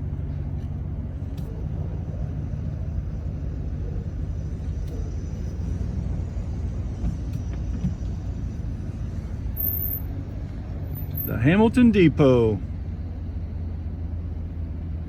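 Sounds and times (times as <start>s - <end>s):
truck engine rumble: 0.0s - 15.0s.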